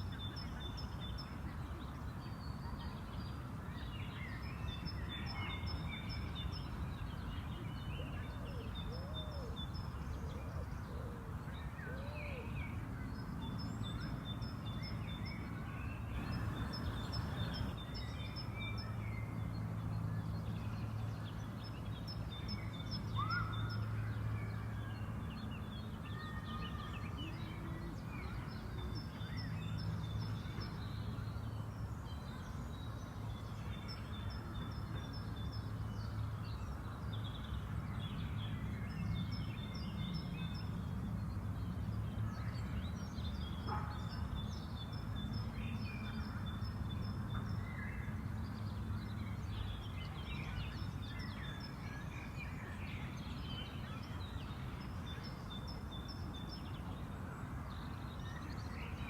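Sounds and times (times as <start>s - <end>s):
songbirds chirping and singing: 3.8s - 19.0s.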